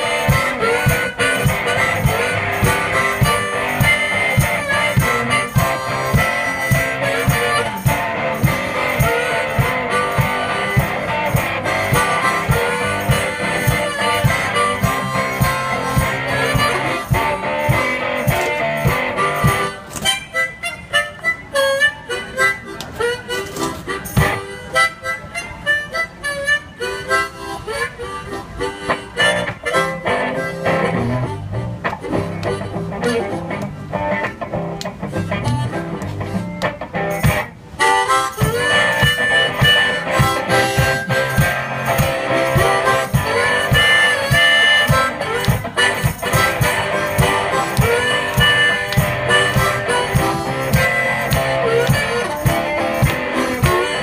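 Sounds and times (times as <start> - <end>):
low drum beat: 0.0 - 19.7
guitar playing: 0.0 - 54.0
harmonica solo: 0.0 - 54.0.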